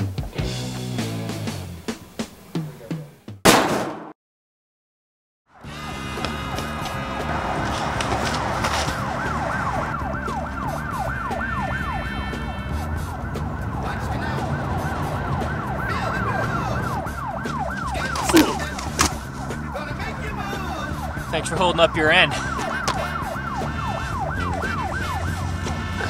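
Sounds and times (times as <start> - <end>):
sharp loud bangs: 3.4 - 4.2
siren yelping: 5.6 - 26.0.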